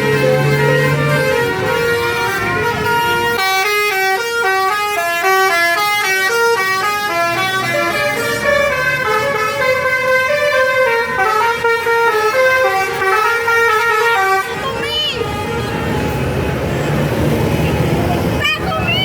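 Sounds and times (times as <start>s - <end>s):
bus horn playing melody: 0.0s - 16.6s.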